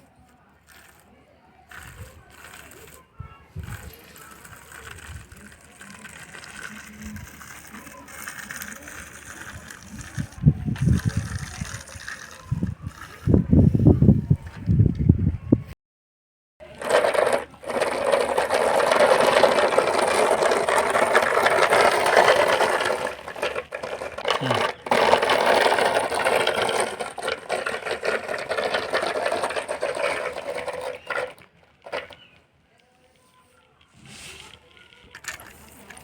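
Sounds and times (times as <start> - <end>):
small electric toy motor buzzing: 16.7 - 32.2.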